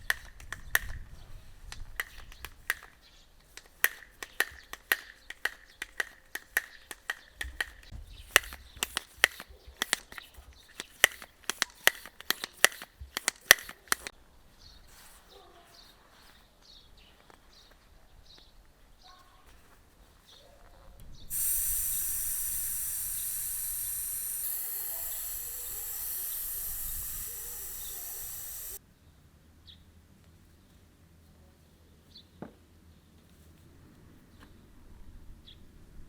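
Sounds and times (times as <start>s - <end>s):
sharp clicks: 0.0s - 1.1s, 1.7s - 14.1s, 21.3s - 28.8s
loud steady hiss: 21.3s - 28.8s.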